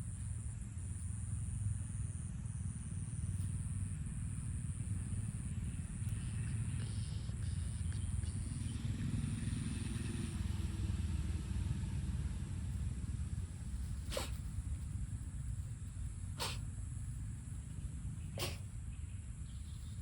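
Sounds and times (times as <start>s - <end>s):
steady low rumble: 0.0s - 20.0s
cat sneezing: 14.0s - 14.4s, 16.4s - 16.6s, 18.4s - 18.7s.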